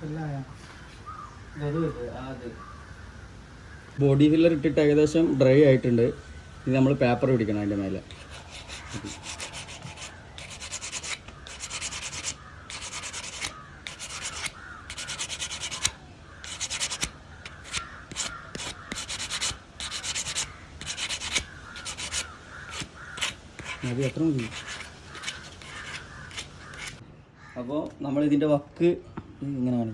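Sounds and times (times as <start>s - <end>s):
sandpaper scratching back and forth: 7.9s - 27.0s.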